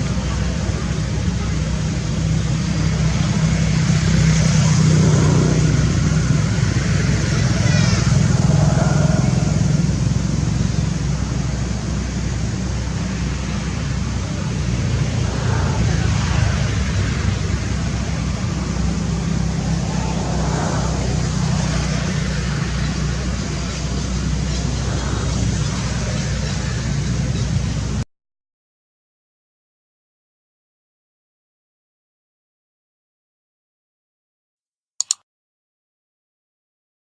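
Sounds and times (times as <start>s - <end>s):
faint voices: 0.0s - 28.0s
road traffic rumble: 0.0s - 28.0s.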